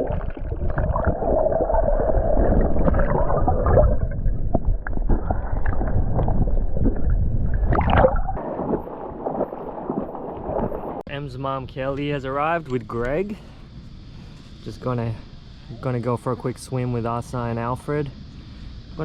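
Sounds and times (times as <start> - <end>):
underwater gurgling and rushing: 0.0 - 11.0.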